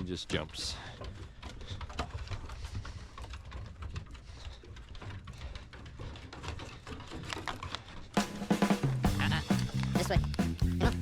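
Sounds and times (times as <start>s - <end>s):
footsteps: 0.0s - 11.0s
dog claws clicking: 1.0s - 8.2s.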